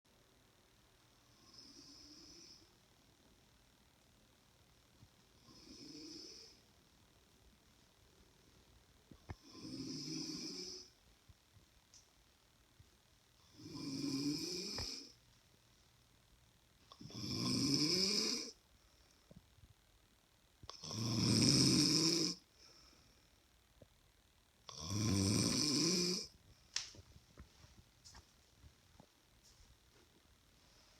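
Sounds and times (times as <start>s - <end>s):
quiet breathing: 1.1s - 3.0s, 5.0s - 6.9s, 7.7s - 11.0s, 13.4s - 15.8s, 16.8s - 19.6s, 20.6s - 23.9s, 29.4s - 30.9s
woman snoring: 1.3s - 2.7s, 5.4s - 6.7s, 9.3s - 11.0s, 13.5s - 15.2s, 16.9s - 18.6s, 20.7s - 22.5s, 24.7s - 26.4s.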